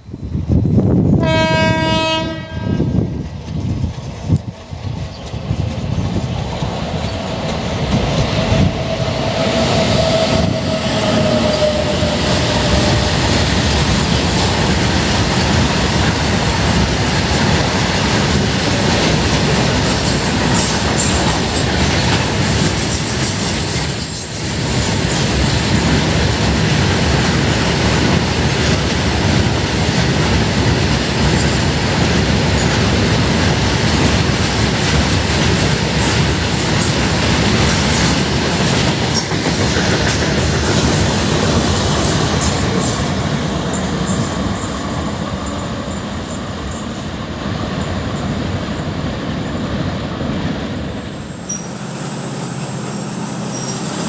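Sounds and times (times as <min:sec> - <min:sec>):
train wheels rumbling on rails: 0:00.0 - 0:54.0
faint wheel squeal: 0:51.2 - 0:54.0.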